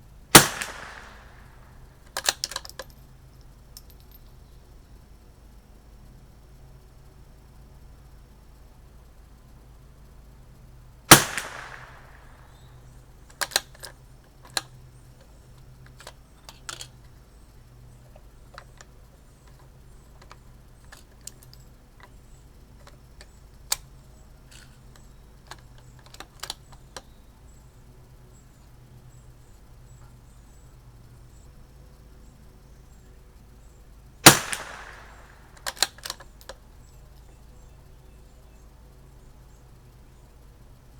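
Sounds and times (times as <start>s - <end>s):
rifle shot: 0.3s - 2.5s, 11.1s - 12.6s, 34.2s - 36.1s
sharp mechanical clicks and knocks: 0.3s - 3.1s, 13.3s - 17.2s, 18.1s - 27.2s, 34.2s - 37.4s.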